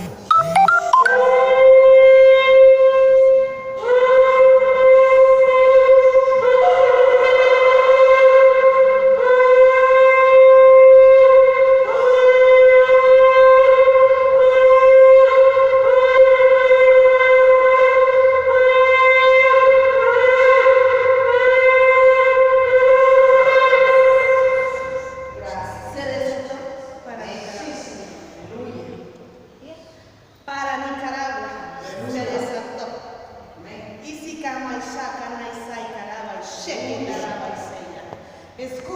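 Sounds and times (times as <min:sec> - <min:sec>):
shofar blast: 0:00.0 - 0:27.1.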